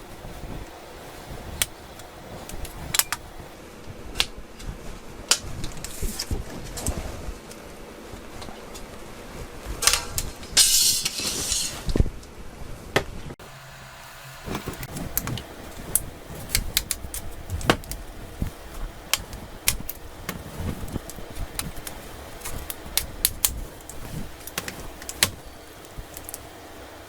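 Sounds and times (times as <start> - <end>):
scraping hiss: 10.2 - 12.0.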